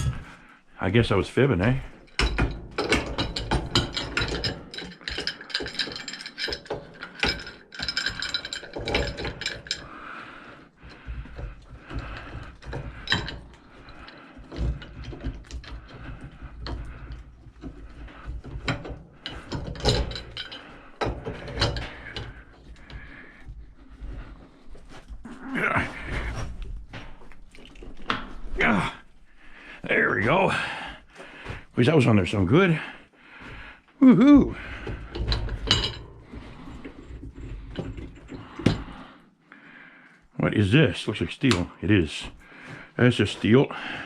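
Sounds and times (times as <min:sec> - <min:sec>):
pipe wrench clanking on brass: 0:01.7 - 0:10.0, 0:10.8 - 0:23.5, 0:34.5 - 0:39.0.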